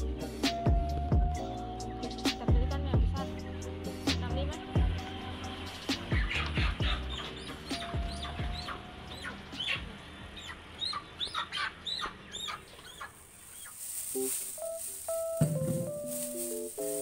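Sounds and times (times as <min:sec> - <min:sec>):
chickens clucking: 0:05.9 - 0:17.0.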